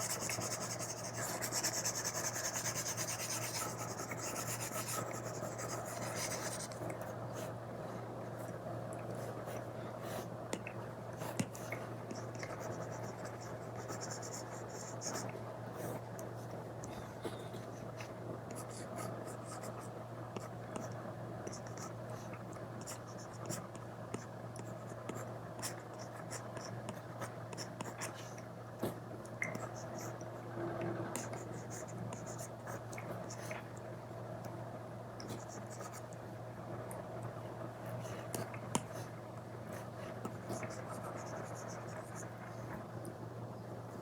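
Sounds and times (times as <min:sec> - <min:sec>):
stylus scratching on a tablet screen: 0:00.0 - 0:06.8, 0:11.3 - 0:16.0, 0:31.2 - 0:33.6, 0:39.8 - 0:42.3
stylus scratching on screen: 0:00.0 - 0:06.8
faint low hum: 0:00.0 - 0:44.0.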